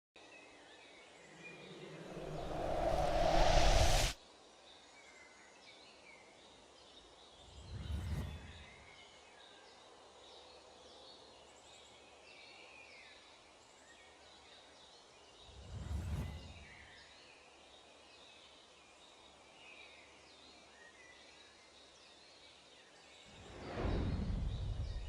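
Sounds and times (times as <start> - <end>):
swell of noise: 1.3 - 4.2.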